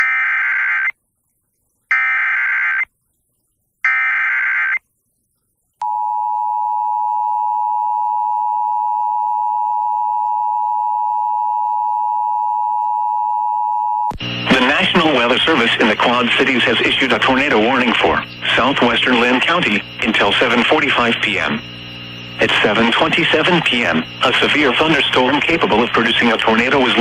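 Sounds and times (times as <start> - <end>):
screeching digital data tones: 3.9 - 4.8, 14.5 - 27.0.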